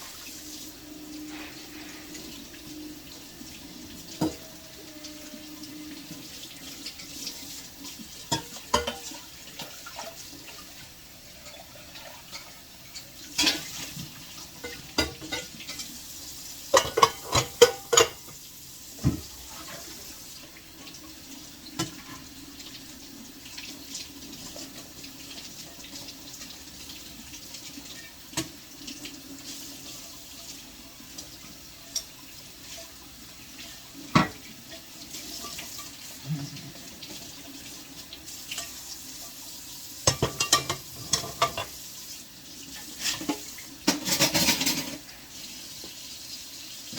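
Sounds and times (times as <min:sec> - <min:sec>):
tap water running into sink: 0:00.0 - 0:46.9
dishes and cutlery clinking: 0:04.0 - 0:10.2, 0:11.4 - 0:16.0, 0:16.7 - 0:18.4, 0:40.0 - 0:41.8, 0:42.9 - 0:45.1.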